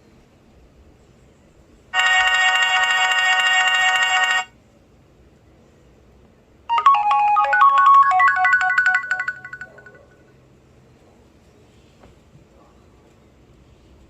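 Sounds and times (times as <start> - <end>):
electronic phone ring: 2.0 - 4.5, 6.7 - 10.2
electronic ringtone tune: 6.7 - 10.2.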